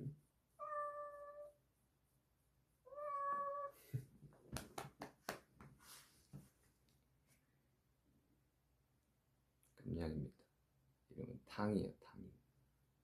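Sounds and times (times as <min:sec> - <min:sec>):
cat meowing: 0:00.6 - 0:01.6, 0:02.9 - 0:03.8.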